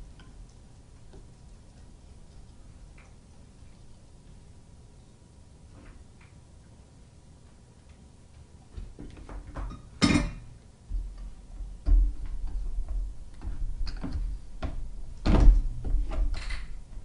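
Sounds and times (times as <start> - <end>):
small clicks and knocks of hand work: 13.3 - 14.8.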